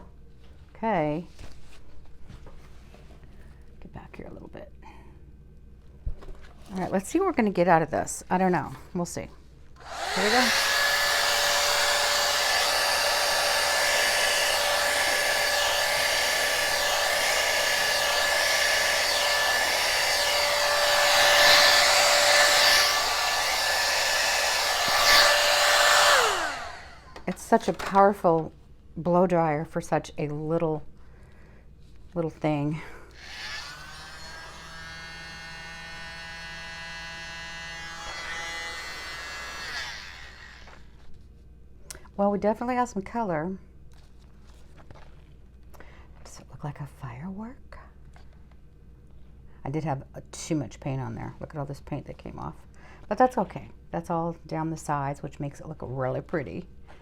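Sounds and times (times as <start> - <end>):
blow dryer whining: 9.8 - 28.0, 32.8 - 41.0.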